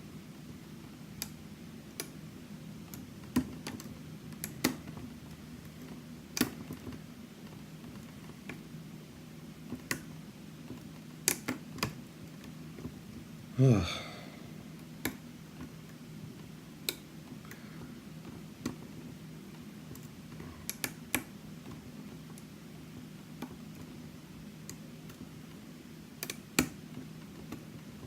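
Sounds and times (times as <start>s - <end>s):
steady low hum: 12.0s - 25.4s.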